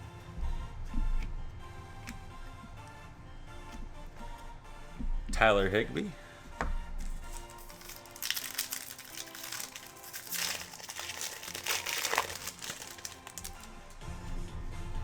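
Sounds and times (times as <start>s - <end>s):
background music: 0.0s - 15.0s
plastic packaging crinkling: 7.0s - 14.0s.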